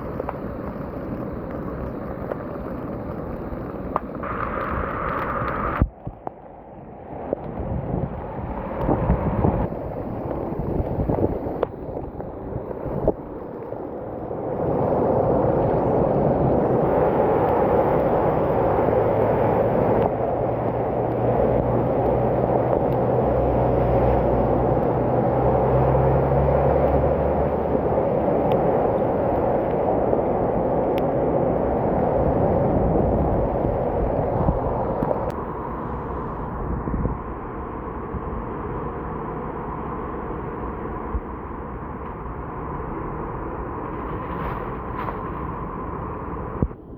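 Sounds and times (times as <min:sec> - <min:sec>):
rain and wind rushing: 0:00.0 - 0:46.8
motor vehicle rumble passing: 0:07.1 - 0:37.9.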